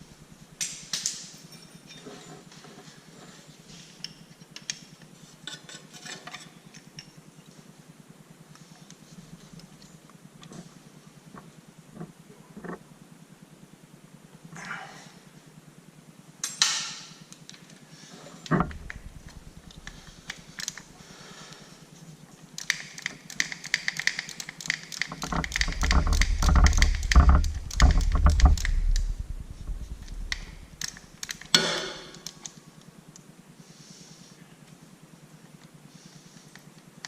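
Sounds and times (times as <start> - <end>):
rapid mechanical clicking: 18.5 - 21.0, 22.6 - 31.5
low rumble: 18.6 - 20.4, 25.2 - 31.3
metal knocks: 25.1 - 32.1.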